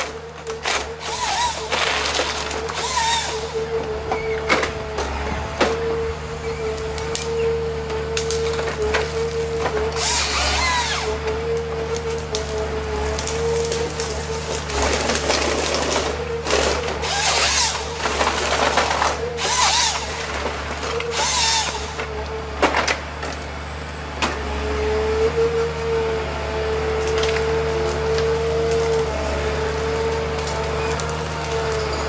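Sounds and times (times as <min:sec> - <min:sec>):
wood machine whining: 0:00.0 - 0:05.8, 0:06.6 - 0:22.8.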